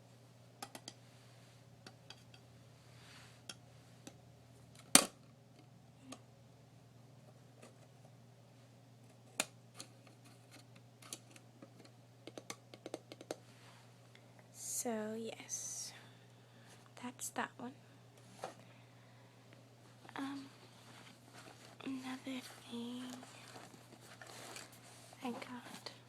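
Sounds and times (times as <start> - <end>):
faint steady hum: 0.0 - 26.0
small objects tapping and clicking: 9.4 - 13.4.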